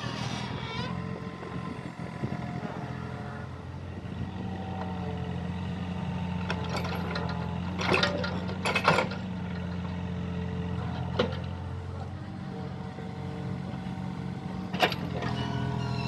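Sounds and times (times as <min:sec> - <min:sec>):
excavator engine running: 0:00.2 - 0:16.0.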